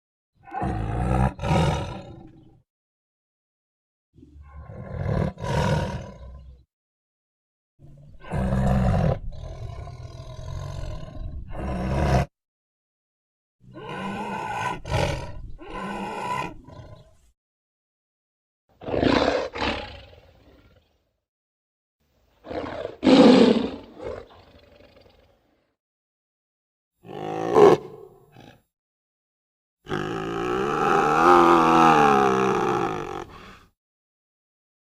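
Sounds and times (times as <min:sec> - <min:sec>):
tiger roaring: 0:00.4 - 0:02.5, 0:04.3 - 0:06.5, 0:07.9 - 0:12.3, 0:13.7 - 0:17.1, 0:18.8 - 0:20.9, 0:22.4 - 0:25.5, 0:27.0 - 0:28.7, 0:29.9 - 0:33.6.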